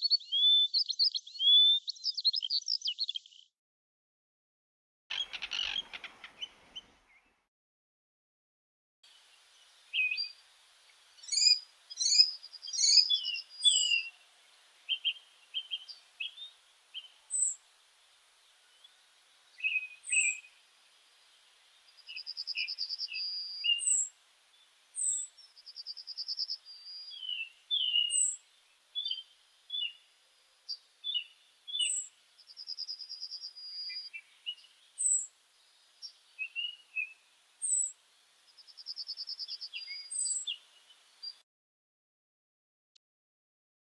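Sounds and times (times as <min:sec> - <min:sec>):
birds whistling and trilling: 0:00.0 - 0:03.4, 0:05.1 - 0:07.3, 0:09.9 - 0:10.4, 0:11.2 - 0:14.2, 0:14.9 - 0:17.6, 0:19.5 - 0:20.6, 0:21.9 - 0:24.1, 0:25.0 - 0:28.4, 0:29.0 - 0:30.0, 0:31.0 - 0:37.9, 0:38.6 - 0:41.4.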